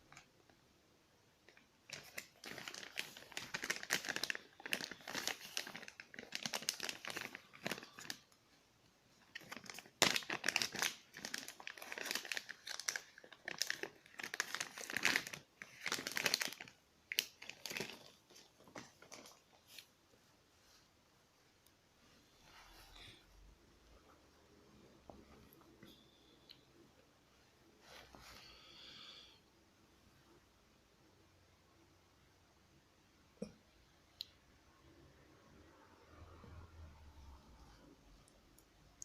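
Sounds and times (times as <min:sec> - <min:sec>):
packaging wrapper crinkling: 0:01.5 - 0:08.3, 0:09.2 - 0:19.9.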